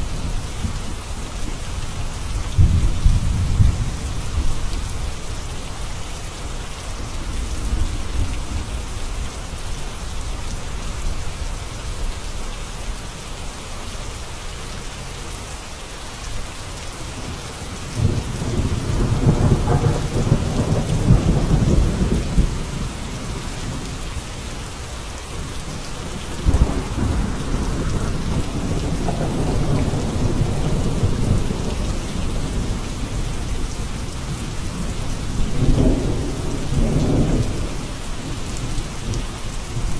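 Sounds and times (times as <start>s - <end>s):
steady rain: 0.0s - 39.9s
rolling thunder: 2.3s - 5.2s, 17.1s - 24.0s, 25.3s - 39.2s.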